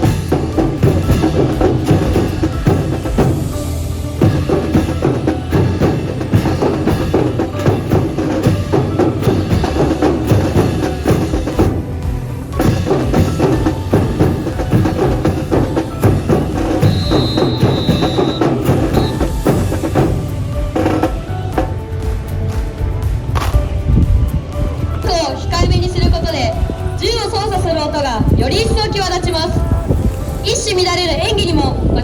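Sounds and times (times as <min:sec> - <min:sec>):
brass band playing: 0:00.0 - 0:22.2
percussion beat: 0:00.0 - 0:32.0.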